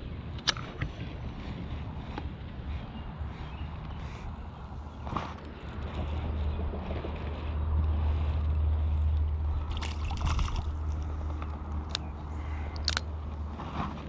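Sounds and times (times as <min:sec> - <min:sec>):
steady low rumble: 0:00.0 - 0:14.0
creek water trickling: 0:08.4 - 0:13.0
sharp clicks: 0:11.4 - 0:13.1.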